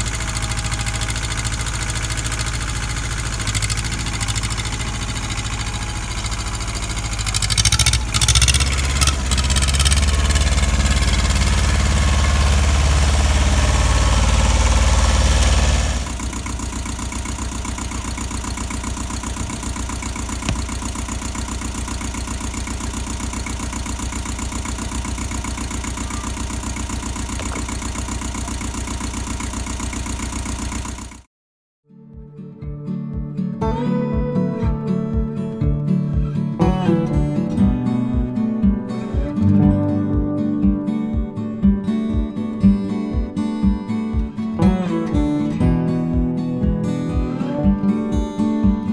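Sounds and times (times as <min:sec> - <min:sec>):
engine running hard: 0:00.0 - 0:31.2
sharp engine knocks: 0:00.0 - 0:31.2.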